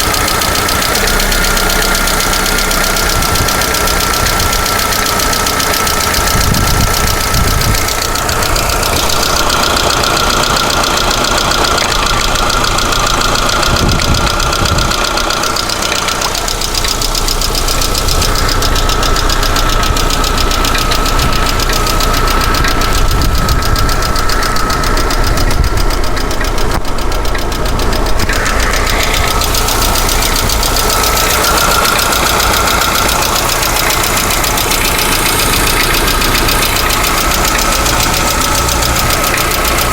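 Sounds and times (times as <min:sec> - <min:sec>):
car engine running: 0:00.0 - 0:39.9
valve lifters ticking: 0:00.0 - 0:39.9
high whine: 0:16.2 - 0:39.9.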